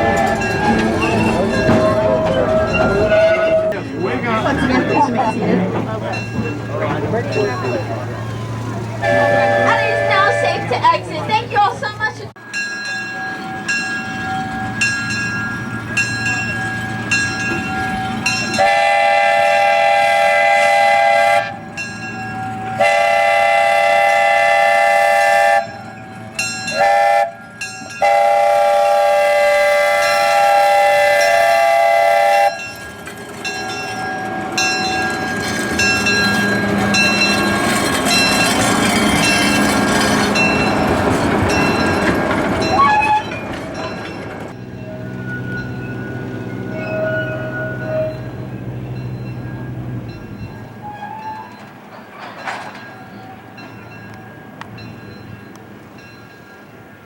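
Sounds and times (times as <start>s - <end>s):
locomotive bell ringing: 0.0s - 57.0s
train noise: 0.0s - 57.0s
steam whistle blasts: 18.6s - 21.6s, 22.8s - 25.8s, 26.7s - 27.4s, 28.0s - 32.6s.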